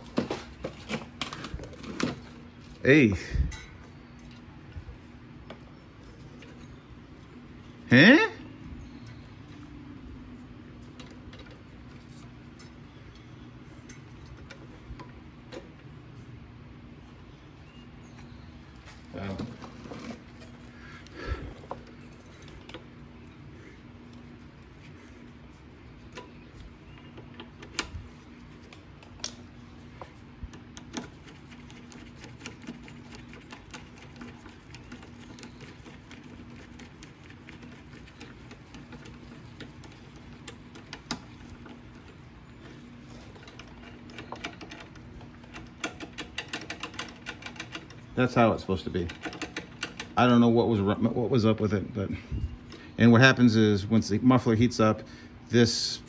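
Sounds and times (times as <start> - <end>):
faint steady hum: 0.0 - 56.0.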